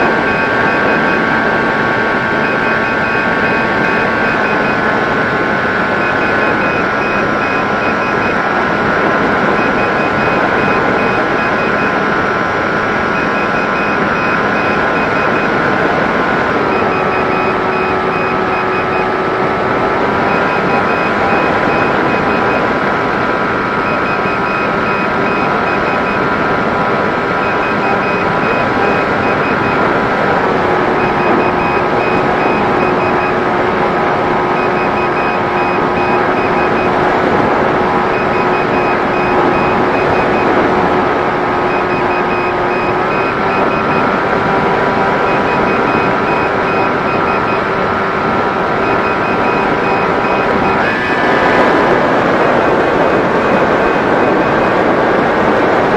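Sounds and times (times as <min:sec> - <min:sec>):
electric motor and propeller whine: 0:00.0 - 0:55.9
faint repeating beeps: 0:00.0 - 0:55.9
rushing air: 0:50.5 - 0:55.9.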